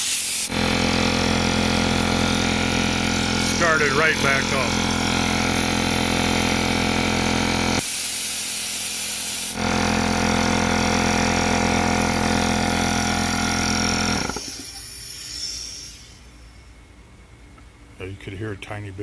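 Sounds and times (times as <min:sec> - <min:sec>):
air compressor running: 0:00.0 - 0:16.6
air hissing: 0:00.0 - 0:16.7.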